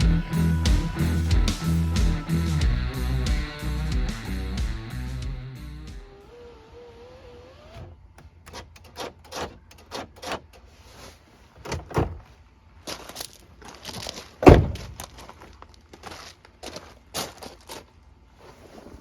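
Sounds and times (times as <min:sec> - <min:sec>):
truck door clicks and knocks: 0:11.6 - 0:12.3, 0:14.4 - 0:15.0
heavy door thunk: 0:14.4 - 0:15.0.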